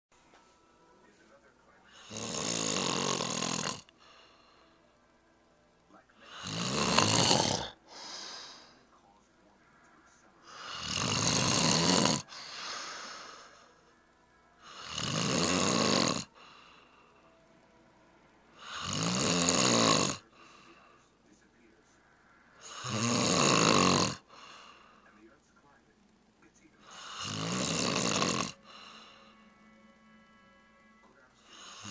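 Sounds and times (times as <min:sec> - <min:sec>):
person snoring loudly: 0:01.9 - 0:04.6, 0:06.2 - 0:08.7, 0:10.4 - 0:13.7, 0:14.6 - 0:17.0, 0:18.6 - 0:20.9, 0:22.6 - 0:24.9, 0:26.8 - 0:29.5, 0:31.4 - 0:31.9
soft breath: 0:07.8 - 0:09.1, 0:12.3 - 0:14.0, 0:20.3 - 0:21.3.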